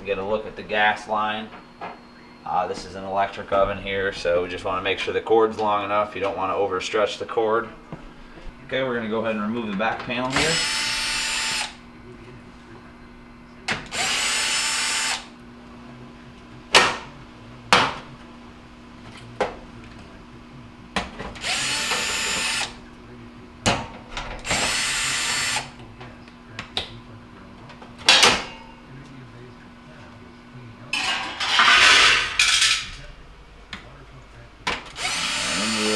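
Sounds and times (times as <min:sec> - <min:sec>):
power drill backing out screws: 0:10.2 - 0:11.8, 0:13.6 - 0:15.4, 0:21.2 - 0:22.9, 0:24.2 - 0:25.8, 0:34.8 - 0:35.9.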